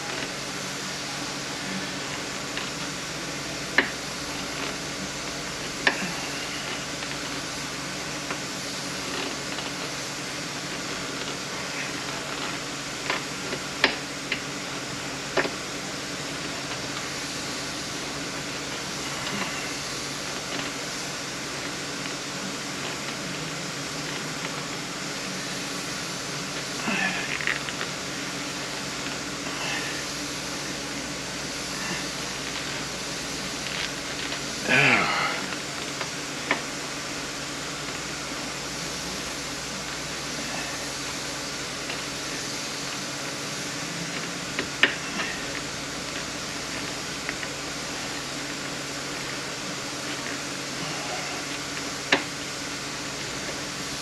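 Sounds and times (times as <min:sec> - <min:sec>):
fan-like hiss: 0:00.0 - 0:54.0.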